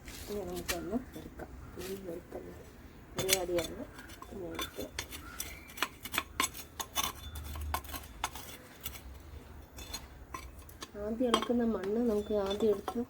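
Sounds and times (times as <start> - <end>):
hand tool digging in soil: 0.0 - 13.0.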